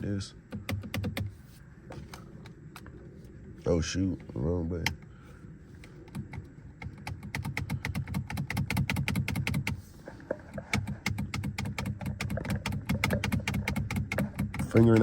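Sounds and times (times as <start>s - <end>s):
low steady rumble: 0.0s - 15.0s
paddle shifters clicking: 6.0s - 15.0s.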